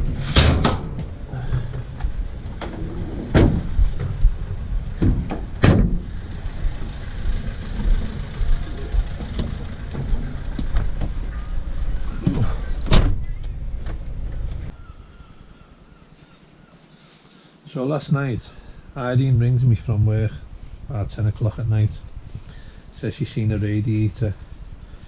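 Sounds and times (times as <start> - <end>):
low road and engine rumble: 0.0 - 14.8
sharp knocks: 0.1 - 2.0, 3.2 - 6.1.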